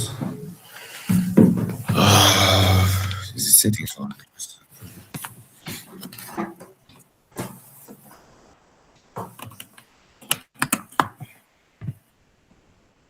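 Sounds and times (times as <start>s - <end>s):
sharp clicks and taps: 9.2s - 12.0s.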